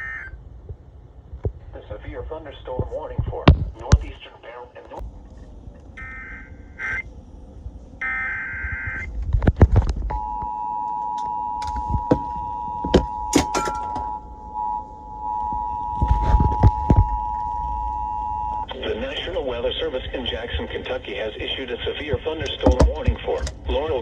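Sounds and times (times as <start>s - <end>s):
warbling data bursts: 6.0s - 7.1s
sharp clicks and knocks: 22.1s - 23.7s.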